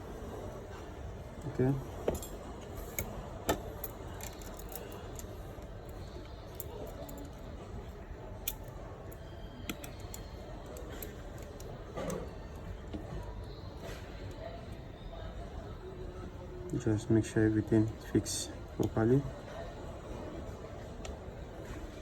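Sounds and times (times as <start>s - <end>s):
low background hum: 0.0s - 22.0s
clicks and taps of metal tools: 9.6s - 12.3s.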